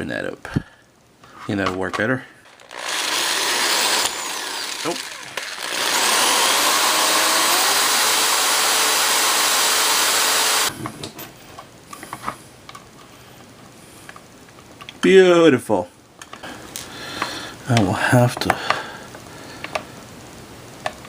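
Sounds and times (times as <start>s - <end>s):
small handheld power tool running: 2.6s - 10.7s.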